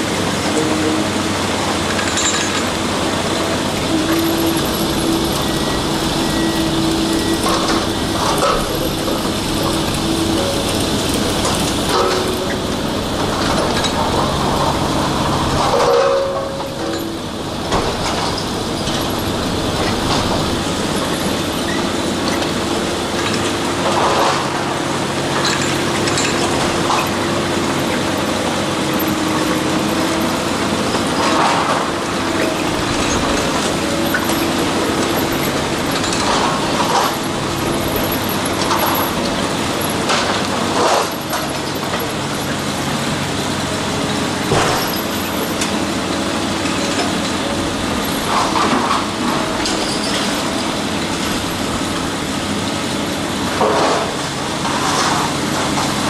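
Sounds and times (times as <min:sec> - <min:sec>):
heavy diesel machinery running: 0:00.0 - 0:56.0
clanks and crunches: 0:00.4 - 0:52.2, 0:52.8 - 0:56.0.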